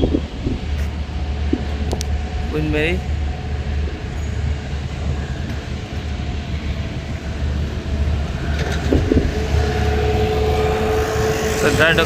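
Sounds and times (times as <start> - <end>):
car driving rumble: 0.0 - 12.0.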